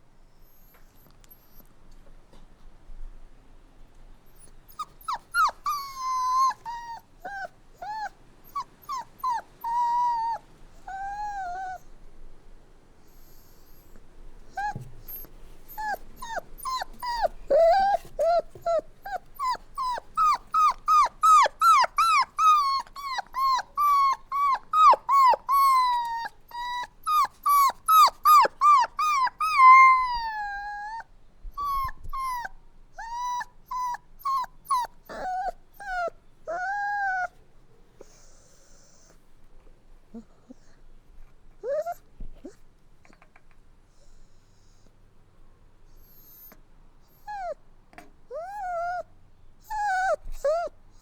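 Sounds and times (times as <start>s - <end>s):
puppy yelping and whining: 0.5s - 1.7s, 4.3s - 11.9s, 13.1s - 37.4s, 38.0s - 39.2s, 41.6s - 42.6s, 46.0s - 47.6s, 48.3s - 50.8s.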